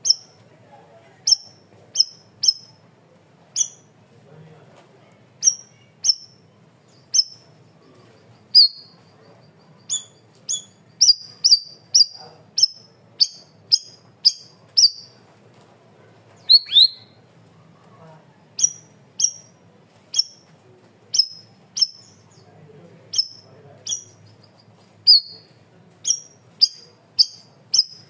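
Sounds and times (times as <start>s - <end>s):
bird calling high chips: 0.0s - 0.4s, 1.3s - 2.8s, 3.6s - 3.9s, 5.4s - 7.4s, 8.5s - 9.0s, 9.8s - 15.2s, 16.4s - 17.2s, 18.6s - 20.5s, 21.1s - 22.3s, 23.1s - 28.0s.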